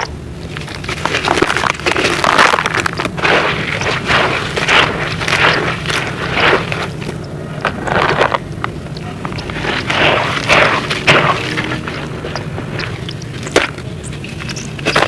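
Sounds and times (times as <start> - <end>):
sharp little cracks: 0.0 - 11.6
sand cement crunching: 0.0 - 15.0.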